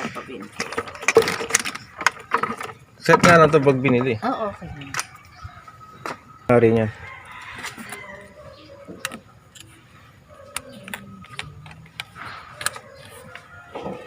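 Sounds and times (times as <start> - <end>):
faint voices: 3.1 - 14.0
hands clicking on engine wires: 9.0 - 9.8, 10.4 - 13.5.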